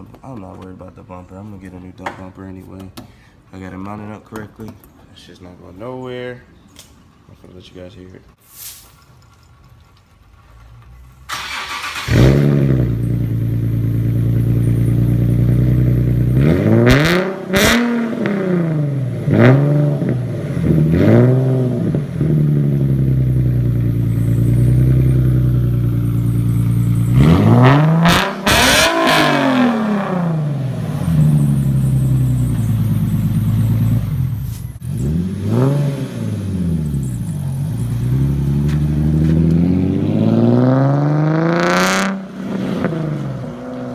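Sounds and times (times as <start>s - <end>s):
car engine starting and idling: 9.1s - 43.9s
car engine revving: 11.3s - 43.9s.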